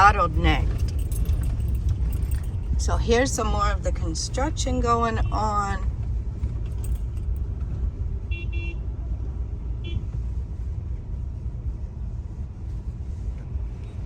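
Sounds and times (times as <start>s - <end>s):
road and engine rumble: 0.0s - 14.0s.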